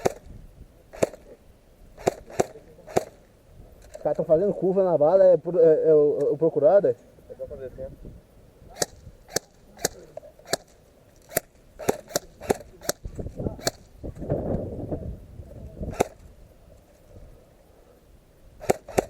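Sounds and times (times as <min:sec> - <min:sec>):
airsoft gun shots: 0:00.0 - 0:00.3, 0:00.9 - 0:01.4, 0:02.0 - 0:03.2, 0:08.7 - 0:13.9, 0:15.9 - 0:16.3, 0:18.6 - 0:19.0.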